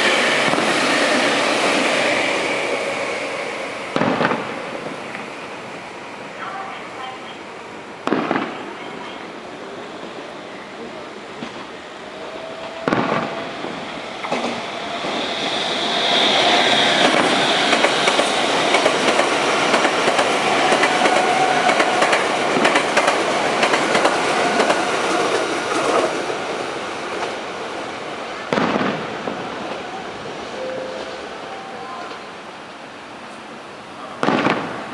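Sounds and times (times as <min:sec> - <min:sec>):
fireworks banging: 0:04.0 - 0:04.5, 0:08.0 - 0:08.8, 0:12.8 - 0:14.6, 0:28.5 - 0:29.7, 0:34.2 - 0:34.9
train wheels clacking over rail joints: 0:14.2 - 0:15.2, 0:17.0 - 0:26.2.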